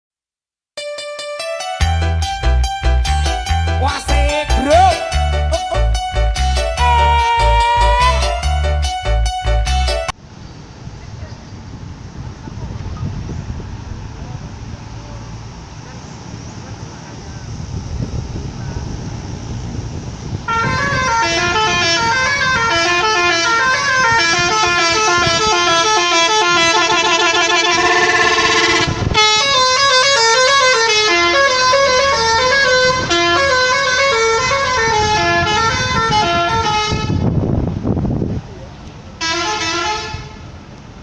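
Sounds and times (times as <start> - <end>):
multi-tone bus air horn melody: 4.4 - 10.1, 20.4 - 37.4, 39.2 - 40.5.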